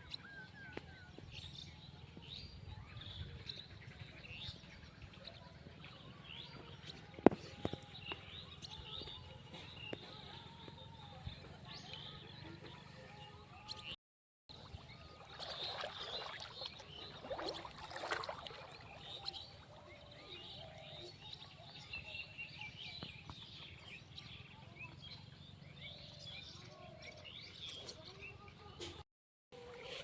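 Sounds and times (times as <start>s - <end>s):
small birds chirping: 14.7s - 28.9s.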